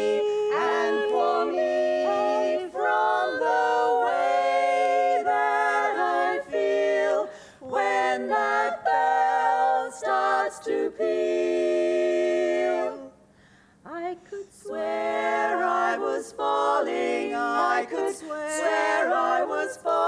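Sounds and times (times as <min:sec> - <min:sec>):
women singing a cappella harmony: 0:00.0 - 0:20.0.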